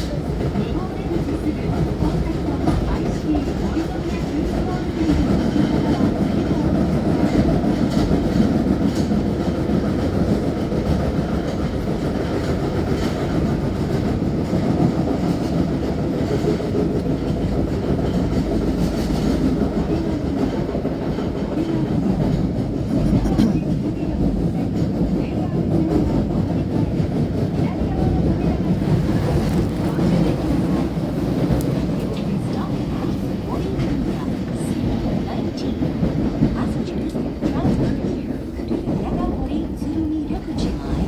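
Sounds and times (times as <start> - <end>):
subway train wheels rumbling: 0.0 - 41.0.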